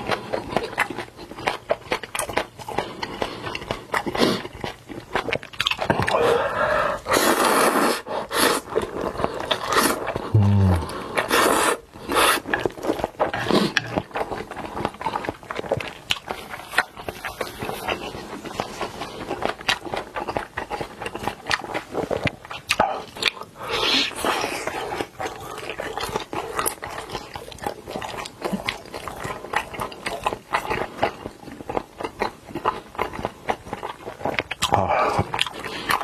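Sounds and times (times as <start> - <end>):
person chewing crunchy food: 0.0 - 36.0
wet mouth noises: 9.6 - 12.7, 33.9 - 36.0.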